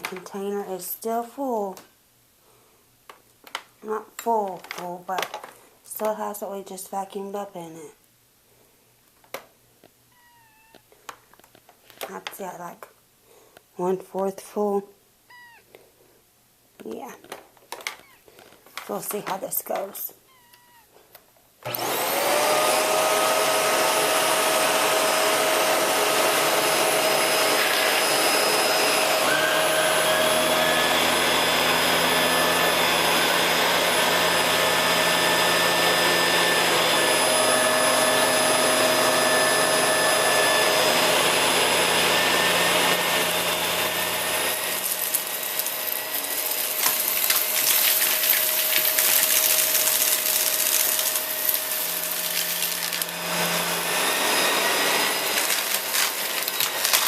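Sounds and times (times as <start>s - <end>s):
vacuum cleaner whining: 21.6s - 57.0s
debris rattling in vacuum: 44.0s - 57.0s.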